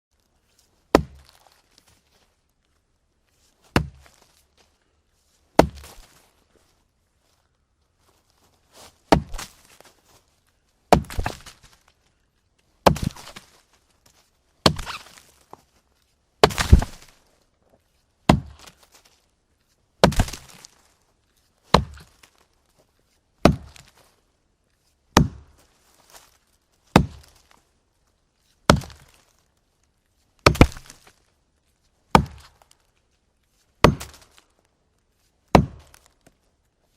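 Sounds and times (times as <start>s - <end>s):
axe chopping wooden log: 0.9s - 1.4s, 3.7s - 4.2s, 5.6s - 6.2s, 9.1s - 9.8s, 10.9s - 11.7s, 12.8s - 13.4s, 14.6s - 15.2s, 16.4s - 17.1s, 18.3s - 18.8s, 20.0s - 20.7s, 21.7s - 22.2s, 23.4s - 24.0s, 25.1s - 25.6s, 26.9s - 27.5s, 28.7s - 29.2s, 30.4s - 31.1s, 32.1s - 32.7s, 33.8s - 34.4s, 35.5s - 36.1s.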